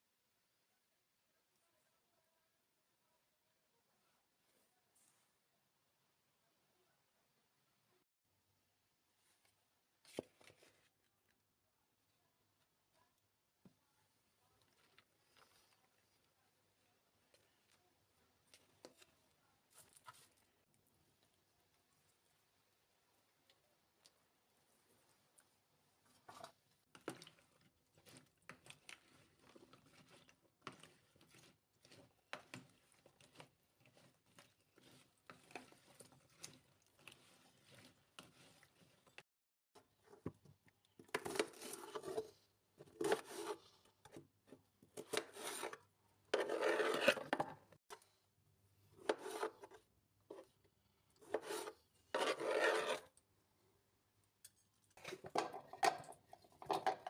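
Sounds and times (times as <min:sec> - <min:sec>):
rough rubbing and scraping strokes: 0:51.3 - 0:53.1.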